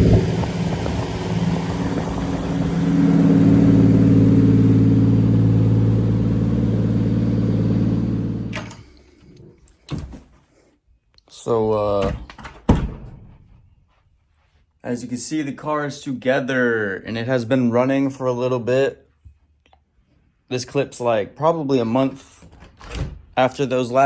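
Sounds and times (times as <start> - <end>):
car engine running: 0.0 - 8.7.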